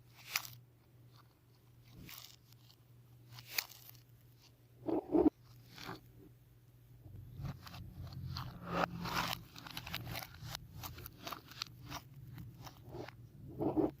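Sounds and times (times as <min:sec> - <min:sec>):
faint low hum: 0:00.0 - 0:14.0
slime crackling: 0:07.3 - 0:13.9.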